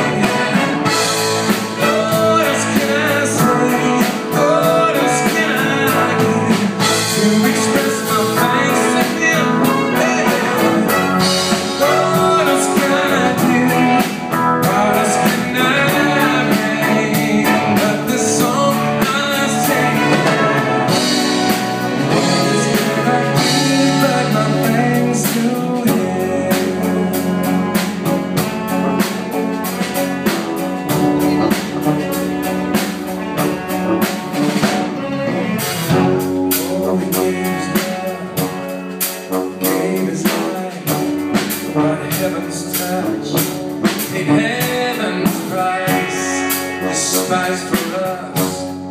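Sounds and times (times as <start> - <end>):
drum kit beat: 0.0 - 48.9
guitar: 0.0 - 48.9
live band playing: 0.0 - 48.9.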